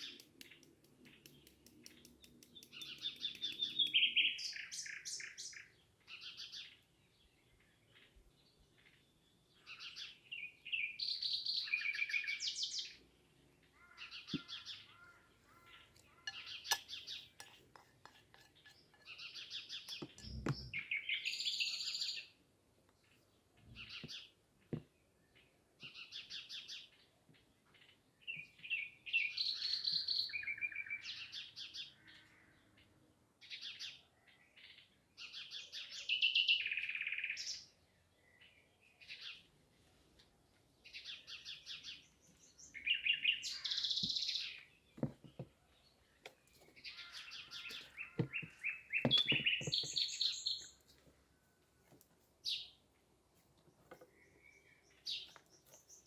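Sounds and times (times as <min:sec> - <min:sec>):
songbirds chirping trills: 0:00.0 - 0:56.0
soft knocks: 0:45.0 - 0:45.6, 0:48.1 - 0:50.2.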